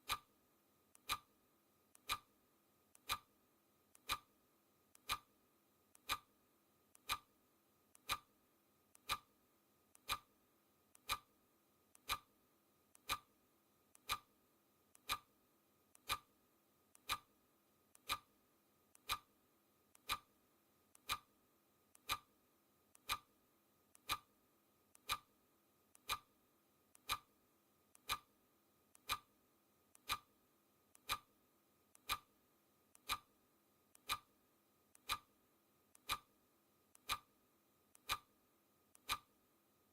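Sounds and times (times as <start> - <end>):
clock ticking: 0.0 - 0.3, 0.9 - 1.3, 1.9 - 2.3, 2.9 - 3.3, 3.9 - 4.3, 4.9 - 5.3, 5.9 - 6.3, 6.9 - 7.3, 7.9 - 8.3, 8.9 - 9.3, 9.9 - 10.3, 10.9 - 11.3, 12.0 - 12.3, 12.9 - 13.3, 13.9 - 14.3, 14.9 - 15.3, 16.0 - 16.3, 16.9 - 17.3, 17.9 - 18.3, 18.9 - 19.3, 19.9 - 20.3, 20.9 - 21.3, 21.9 - 22.3, 22.9 - 23.3, 23.9 - 24.3, 24.9 - 25.3, 25.9 - 26.3, 26.9 - 27.3, 28.0 - 28.3, 28.9 - 29.3, 29.9 - 30.3, 30.9 - 31.3, 31.9 - 32.3, 32.9 - 33.3, 33.9 - 34.3, 35.0 - 36.3, 36.9 - 37.3, 37.9 - 38.3, 38.9 - 39.4.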